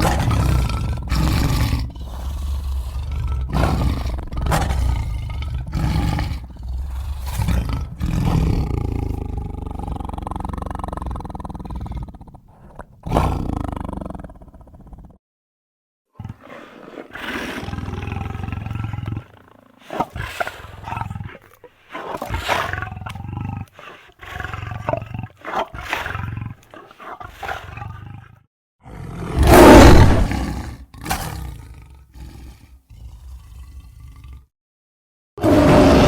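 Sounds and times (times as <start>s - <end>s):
cartoon demon growls and roars: 0.0s - 14.3s, 20.0s - 31.6s, 35.4s - 36.0s.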